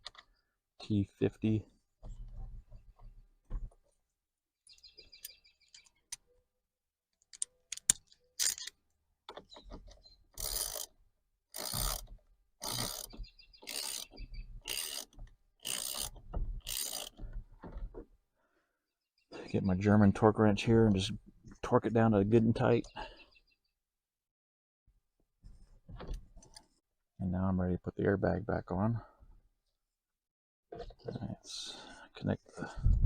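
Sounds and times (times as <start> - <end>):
tool clicks: 7.2 - 9.5
hand ratchet strokes: 10.4 - 17.4.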